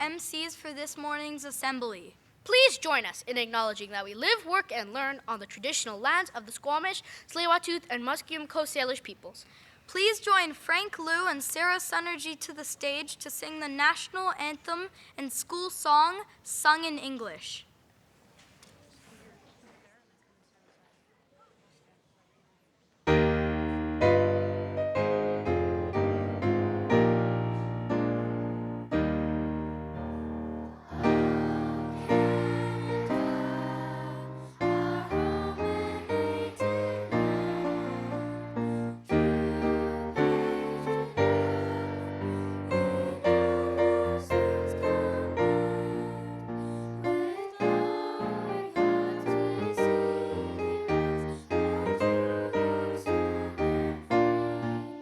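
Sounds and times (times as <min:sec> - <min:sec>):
piano playing chords: 0:23.1 - 0:55.0.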